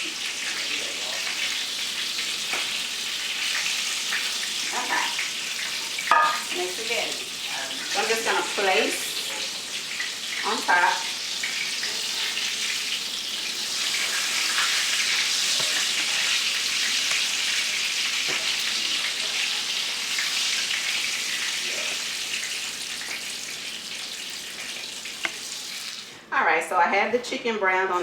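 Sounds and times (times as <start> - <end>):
cutlets sizzling in a pan: 0.0 - 26.2.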